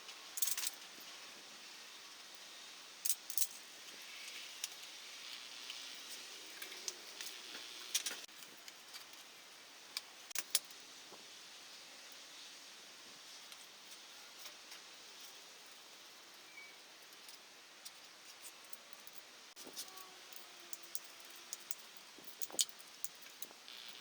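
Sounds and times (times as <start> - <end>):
faint steady hiss: 0.0 - 24.0
metal parts clinking: 0.4 - 0.8.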